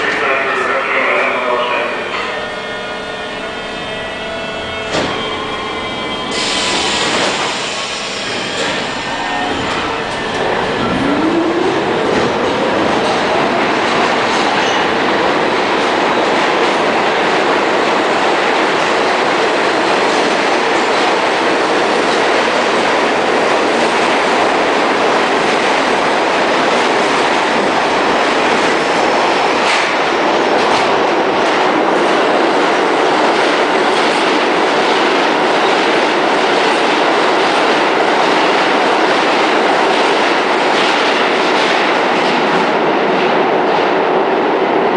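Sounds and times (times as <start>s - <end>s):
train wheels clattering on rails: 4.8s - 5.5s, 6.3s - 44.5s
rising whine: 9.1s - 13.1s.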